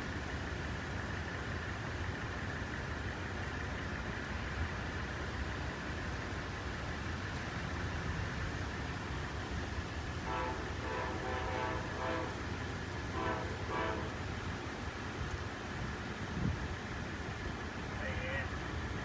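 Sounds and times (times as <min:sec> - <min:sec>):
train rumbling: 0:00.0 - 0:19.0
locomotive air horn: 0:10.2 - 0:14.6.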